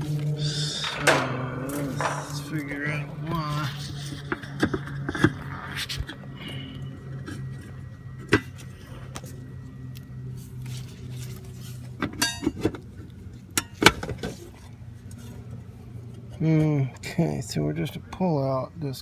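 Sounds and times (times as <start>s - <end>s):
metal parts clicking and clinking: 0.0s - 5.5s
steady low hum: 0.0s - 19.0s.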